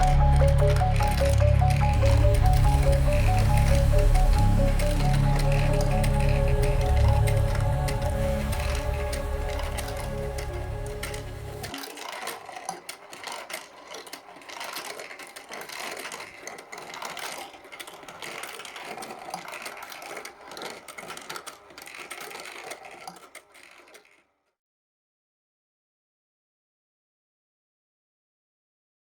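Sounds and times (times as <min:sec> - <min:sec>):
background music: 0:00.0 - 0:12.6
marble run clattering clicks: 0:00.0 - 0:24.3.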